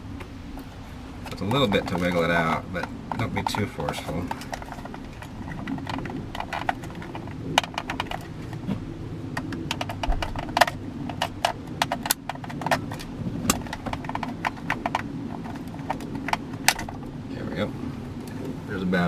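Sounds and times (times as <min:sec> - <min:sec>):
steady low hum: 0:00.0 - 0:19.0
plastic switch clicks and rattles: 0:01.3 - 0:08.8, 0:09.4 - 0:17.1.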